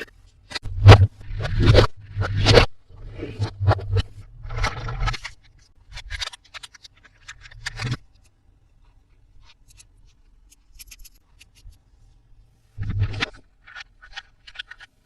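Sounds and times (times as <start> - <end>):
loud scrape: 0.0 - 5.3.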